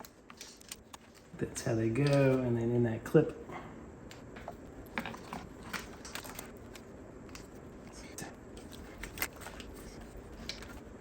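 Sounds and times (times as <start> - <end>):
plastic wiring harness clicks and rustles: 0.0 - 1.3, 1.9 - 2.4, 4.9 - 7.5, 8.6 - 10.8.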